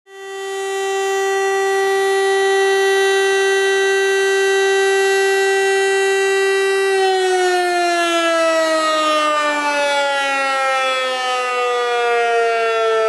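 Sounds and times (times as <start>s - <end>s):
fire alarm siren wailing: 0.1s - 13.0s.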